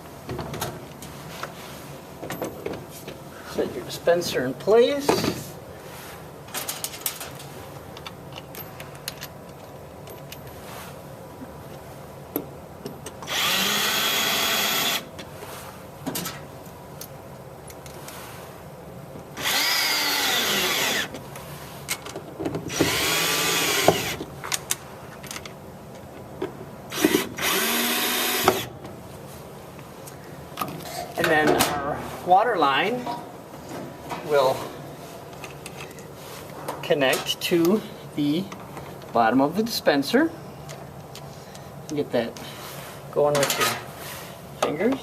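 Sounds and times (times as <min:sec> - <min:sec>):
cordless drill driving screws: 0:13.2 - 0:15.1, 0:19.4 - 0:21.1, 0:22.7 - 0:24.2, 0:26.9 - 0:28.7.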